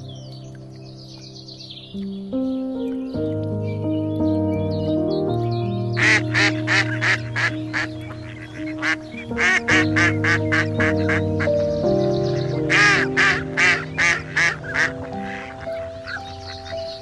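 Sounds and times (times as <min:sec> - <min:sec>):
background music with held chords: 0:00.0 - 0:17.0
ducks quacking: 0:05.9 - 0:17.0.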